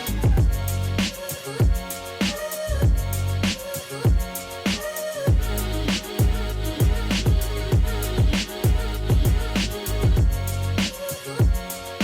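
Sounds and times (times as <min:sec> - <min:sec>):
hi-hats: 0:00.0 - 0:12.0
hip hop beat: 0:00.0 - 0:12.0
deep falling bass drum: 0:00.2 - 0:00.6, 0:06.2 - 0:10.4.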